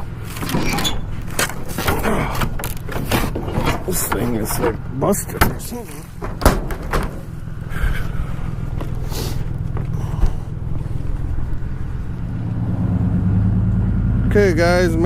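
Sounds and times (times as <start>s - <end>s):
truck engine running: 0.0s - 15.0s
sharp clicks and knocks: 0.3s - 7.2s.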